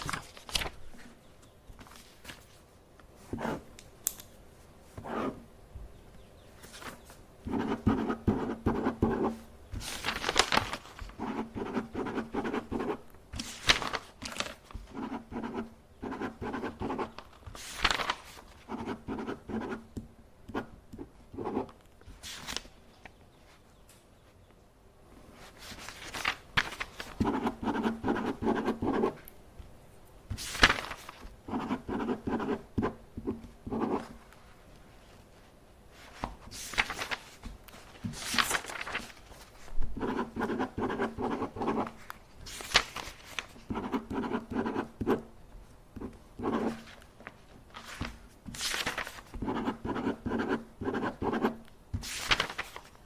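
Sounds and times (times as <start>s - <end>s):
paper swishing: 6.6s - 15.6s, 16.4s - 18.6s, 25.4s - 28.2s, 30.3s - 31.3s, 36.0s - 44.1s, 46.5s - 49.8s, 52.0s - 53.0s.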